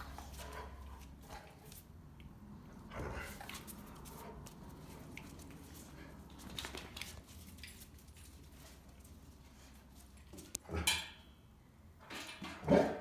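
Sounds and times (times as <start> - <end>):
dogs shuffling and clicking: 0.0 - 2.3, 3.0 - 10.6.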